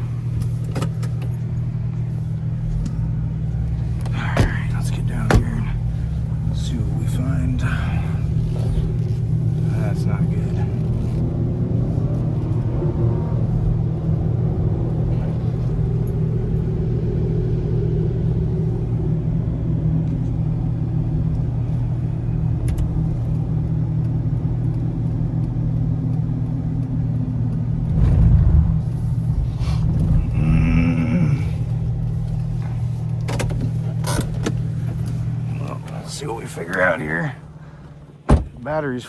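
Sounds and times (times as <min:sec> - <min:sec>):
car engine and road rumble: 0:00.0 - 0:39.0.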